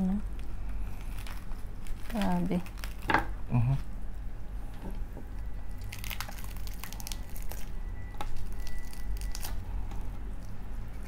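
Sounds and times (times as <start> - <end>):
crispy pork skin crunching: 0.7 - 3.4, 5.4 - 11.0.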